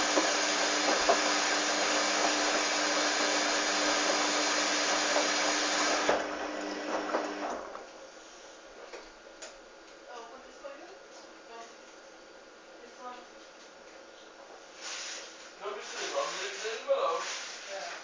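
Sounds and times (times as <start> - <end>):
washing machine running: 0.0 - 8.2.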